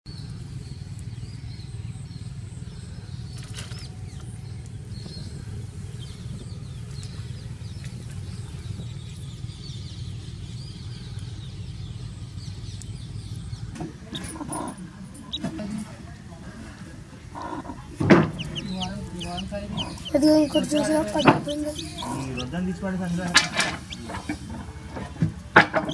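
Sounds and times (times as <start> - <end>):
low rumble: 0.1 - 25.6
chicks peeping: 12.4 - 16.0, 17.2 - 25.9.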